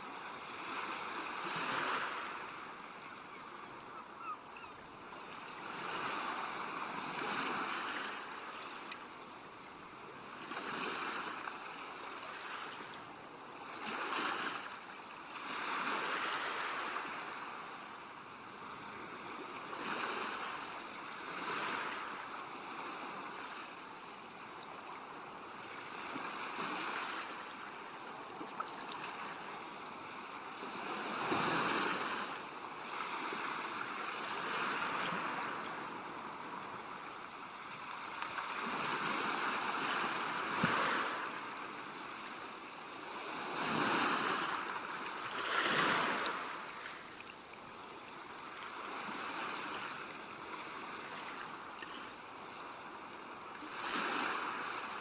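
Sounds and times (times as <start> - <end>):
waves breaking: 37.7 - 42.5, 43.1 - 47.3.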